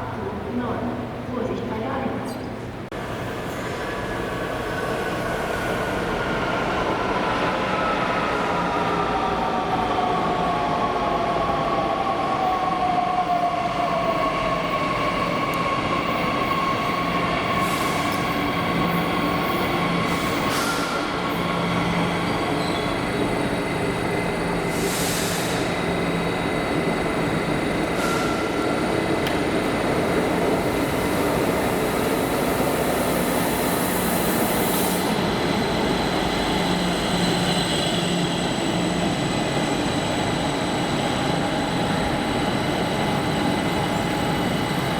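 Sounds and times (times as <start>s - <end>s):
air hissing: 24.7s - 25.7s, 27.9s - 28.6s.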